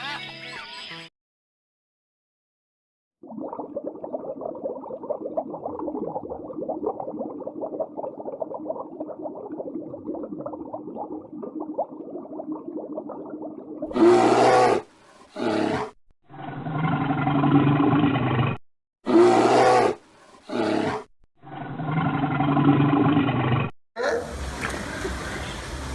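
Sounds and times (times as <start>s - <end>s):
large animal roaring: 13.9s - 24.2s.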